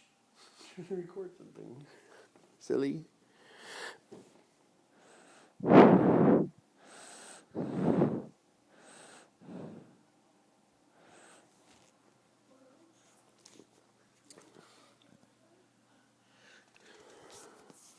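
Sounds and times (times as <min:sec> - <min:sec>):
soft breathy breaths: 0:03.2 - 0:04.3, 0:04.9 - 0:10.1, 0:10.9 - 0:12.0, 0:14.4 - 0:15.1, 0:15.9 - 0:17.9
baby snoring: 0:05.6 - 0:06.5, 0:07.6 - 0:08.3.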